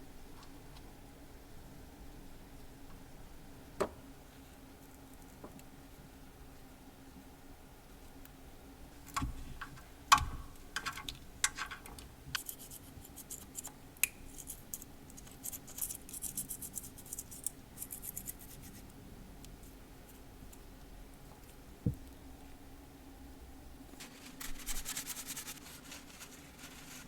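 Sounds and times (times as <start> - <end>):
tools clicking and knocking: 9.1 - 12.5
light scratchy rubbing: 24.0 - 27.0.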